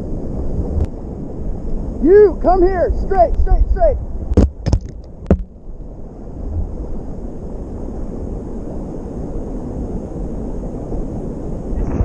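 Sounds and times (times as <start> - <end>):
creek running: 0.0 - 9.1
wind buffeting microphone: 0.0 - 12.0.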